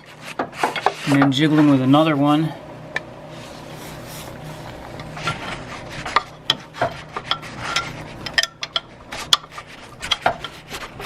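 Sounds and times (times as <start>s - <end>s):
metal scraping: 3.4s - 11.0s.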